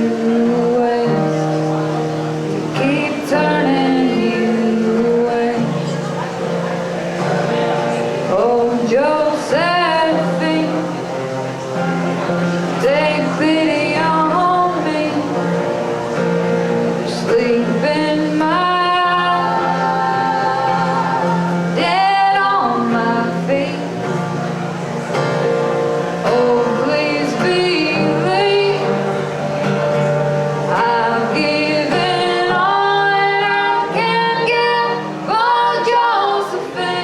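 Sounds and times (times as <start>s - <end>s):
women singing in harmony: 0.0s - 1.8s, 2.7s - 6.1s, 8.3s - 11.1s, 12.8s - 15.8s, 17.0s - 24.1s, 26.2s - 29.2s, 30.7s - 37.0s
acoustic string band playing: 0.0s - 37.0s.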